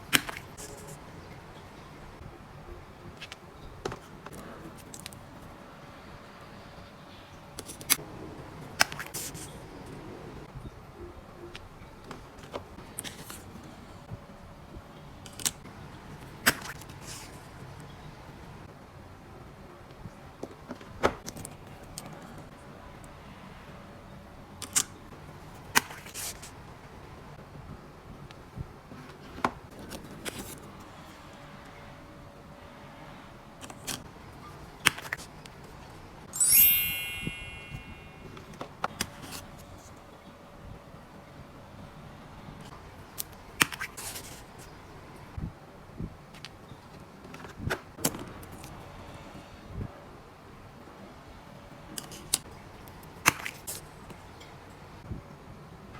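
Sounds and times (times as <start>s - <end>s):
bright metallic ring: 36.4s - 38.3s.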